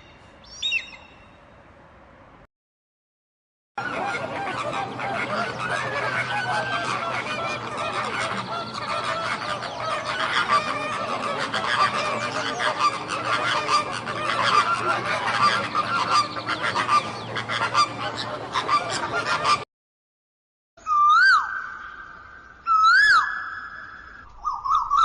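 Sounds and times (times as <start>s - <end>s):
flock of birds calling: 3.8s - 19.6s, 22.7s - 25.0s.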